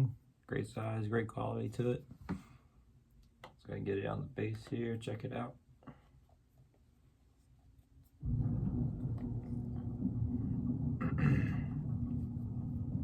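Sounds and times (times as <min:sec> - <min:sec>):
low rumbling hum: 0:08.2 - 0:13.0.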